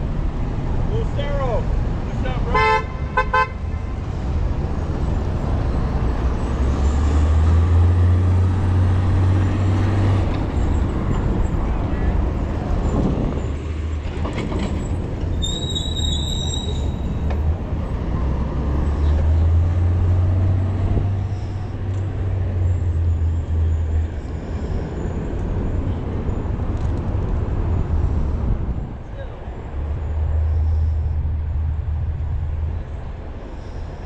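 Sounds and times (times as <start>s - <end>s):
street noise: 0.0s - 34.0s
brief high squeal: 15.4s - 17.2s.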